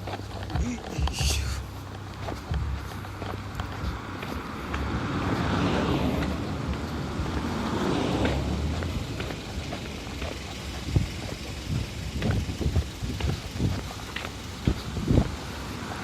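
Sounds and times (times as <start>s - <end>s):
car passing by: 2.1s - 11.1s, 14.7s - 16.0s
wind rumbling on microphone: 2.3s - 16.0s.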